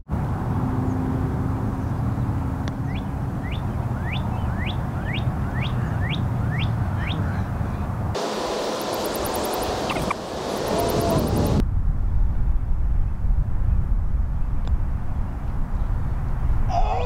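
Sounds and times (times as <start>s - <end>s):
bird chirping: 0.9s - 7.9s, 8.8s - 11.5s
low rumble: 8.2s - 16.7s.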